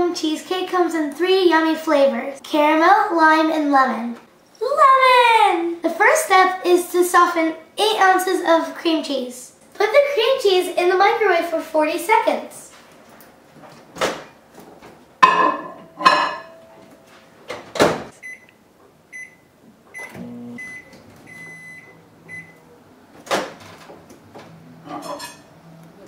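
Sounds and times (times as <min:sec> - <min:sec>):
short keypad beeps: 0:18.2 - 0:18.6, 0:19.2 - 0:19.4, 0:20.0 - 0:22.6
microwave oven humming: 0:19.2 - 0:22.8.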